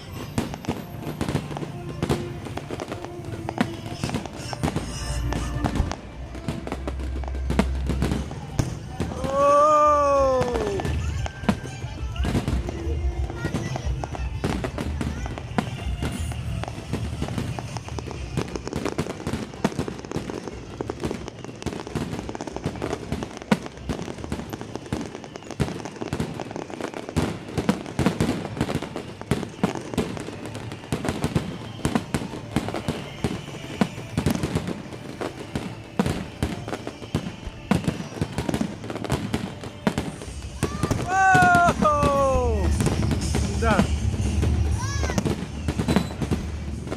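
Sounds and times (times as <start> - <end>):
fireworks bangs and crackling: 0.0 - 46.9.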